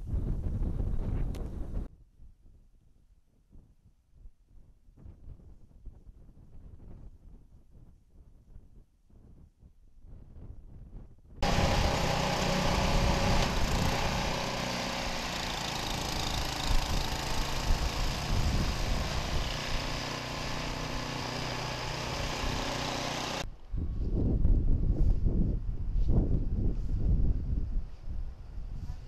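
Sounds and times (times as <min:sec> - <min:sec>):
snow-clearing machine engine: 0:11.4 - 0:23.5.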